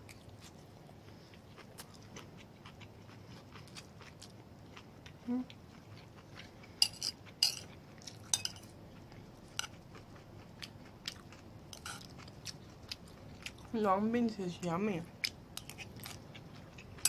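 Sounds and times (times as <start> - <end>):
person chewing: 0.0 - 13.7, 15.2 - 17.0
cutlery clinking on a plate: 6.8 - 7.7, 8.3 - 8.7.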